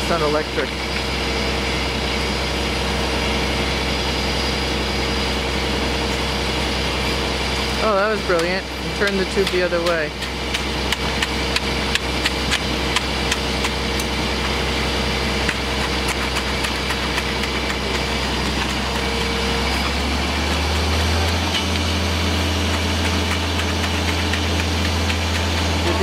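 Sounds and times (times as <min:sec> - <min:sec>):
diesel engine running: 0:00.0 - 0:26.0
sharp clicks and knocks: 0:08.3 - 0:14.6, 0:22.6 - 0:26.0.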